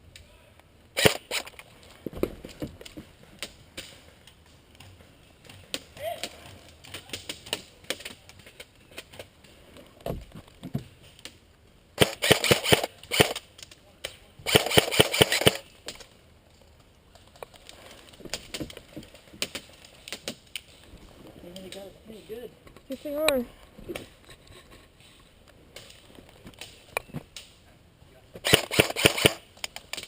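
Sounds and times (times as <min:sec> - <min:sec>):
airsoft rifle automatic bursts: 0:01.0 - 0:01.5, 0:12.0 - 0:13.4, 0:14.5 - 0:15.6, 0:28.4 - 0:29.4.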